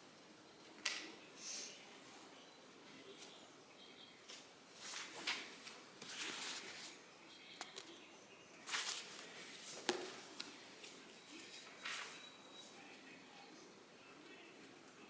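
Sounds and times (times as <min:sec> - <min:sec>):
faint birdsong: 0:00.0 - 0:15.0
soft rustles: 0:04.2 - 0:07.0, 0:08.6 - 0:13.1.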